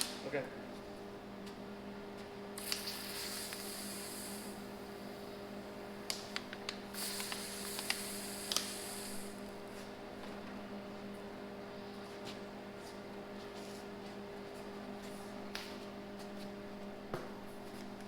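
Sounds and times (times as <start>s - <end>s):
steady electrical hum: 0.0s - 18.0s
welding arc crackling and hissing: 2.6s - 9.8s.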